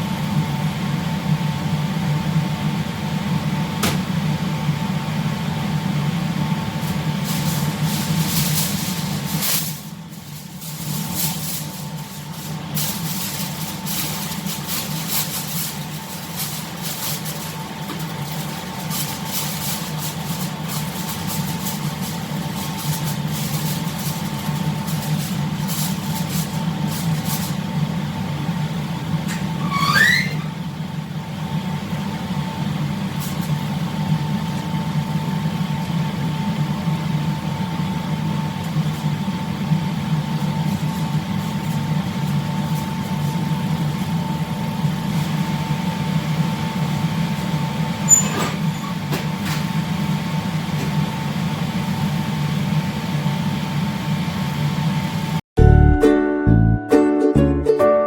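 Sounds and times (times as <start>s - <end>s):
short rising squeak: 29.3s - 30.6s, 48.1s - 49.0s.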